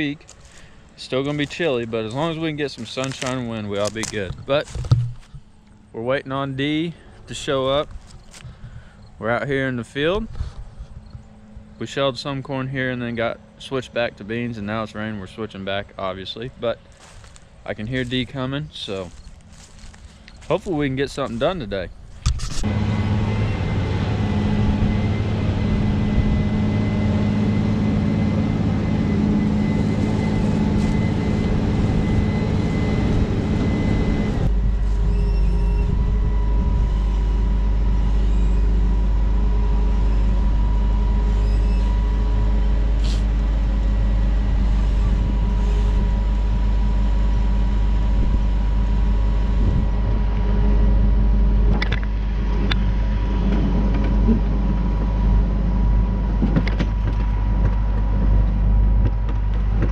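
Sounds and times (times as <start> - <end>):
heavy machinery engine running: 0.0 - 59.9
steady hum: 0.0 - 59.9.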